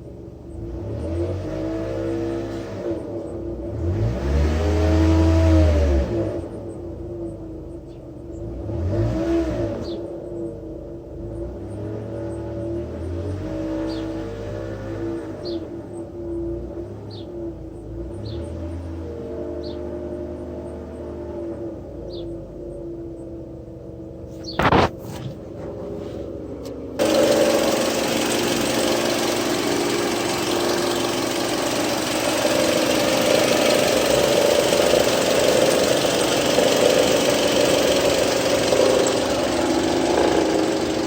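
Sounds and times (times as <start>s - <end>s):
car engine idling: 23.1s - 41.0s
sharp knock: 24.5s - 25.4s.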